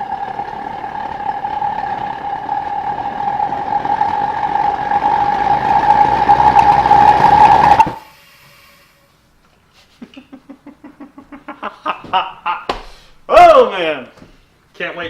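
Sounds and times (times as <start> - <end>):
propane forge burner pulsing buzz: 0.0 - 9.0.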